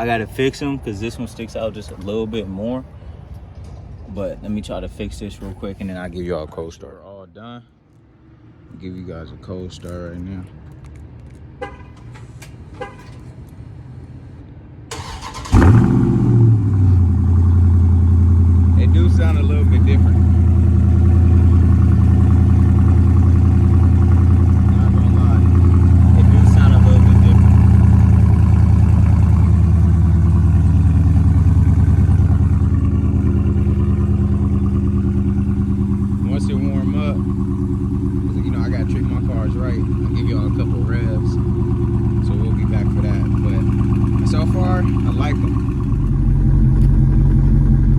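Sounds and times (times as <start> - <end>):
engine starter cranking: 14.9 - 16.0
car engine revving and idling: 14.9 - 47.9.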